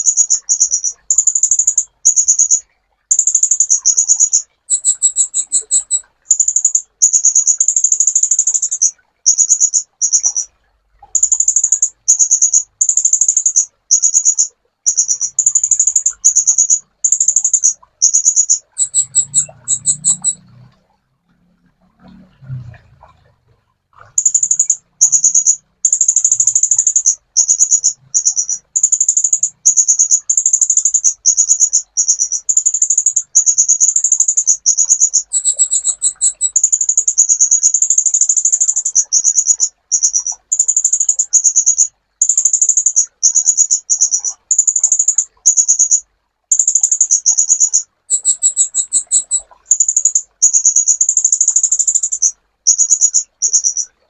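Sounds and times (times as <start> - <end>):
sunbird singing high trills: 3.2 - 7.8, 11.2 - 20.5, 34.4 - 36.7.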